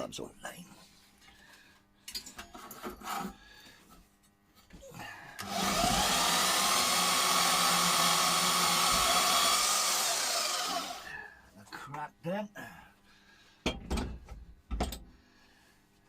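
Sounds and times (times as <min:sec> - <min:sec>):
bandsaw motor running: 0:05.4 - 0:11.2.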